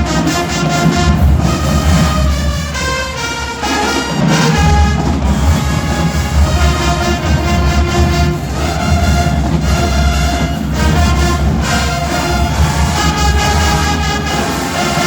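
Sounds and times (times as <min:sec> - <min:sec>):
low brass bass line: 0:00.0 - 0:15.0
marching band brass music: 0:00.0 - 0:15.0.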